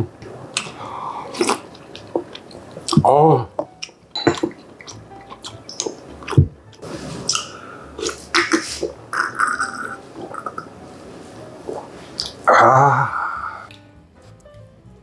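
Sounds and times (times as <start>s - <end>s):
chewing and slurping: 0.5s - 3.0s, 4.5s - 10.7s.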